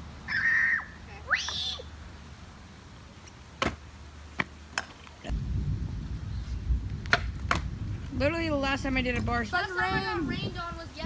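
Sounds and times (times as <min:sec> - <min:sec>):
low rumble: 0:05.3 - 0:10.8.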